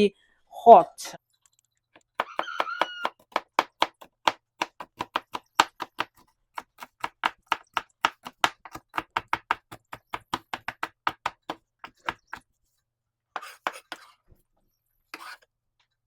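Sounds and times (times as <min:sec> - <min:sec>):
knife chopping on cutting board: 0:02.2 - 0:12.5, 0:13.4 - 0:14.1, 0:15.1 - 0:15.4.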